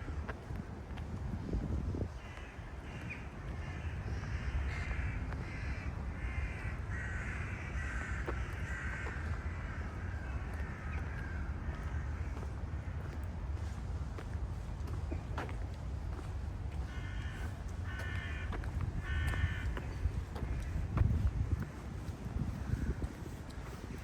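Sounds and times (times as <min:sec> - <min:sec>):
crows cawing: 0:02.1 - 0:13.2, 0:16.8 - 0:20.9.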